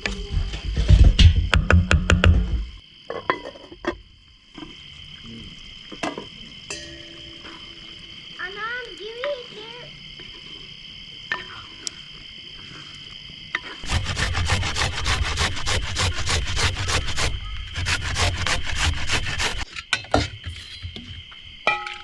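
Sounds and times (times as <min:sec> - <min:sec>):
hand saw cutting wood: 0:13.8 - 0:19.7.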